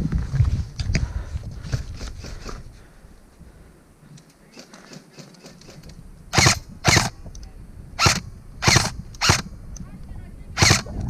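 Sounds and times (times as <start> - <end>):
airsoft rifle shots: 4.6 - 7.2, 8.0 - 9.5, 10.6 - 11.0.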